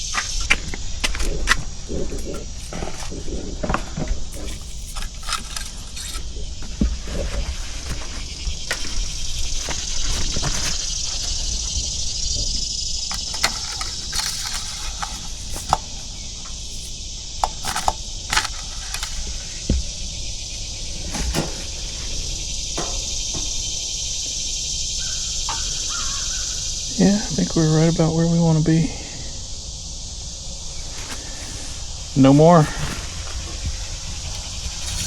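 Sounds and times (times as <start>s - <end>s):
insect chorus: 0.0s - 35.0s
sharp clicks and knocks: 13.1s - 15.9s, 16.7s - 19.3s.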